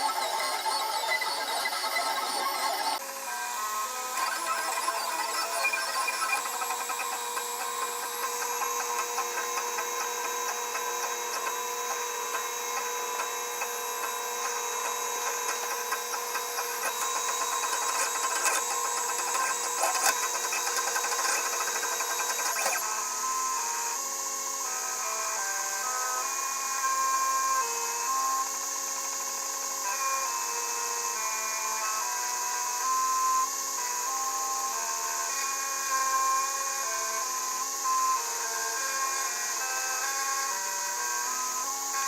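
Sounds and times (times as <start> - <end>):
stepper motors whining: 0.0 - 23.0.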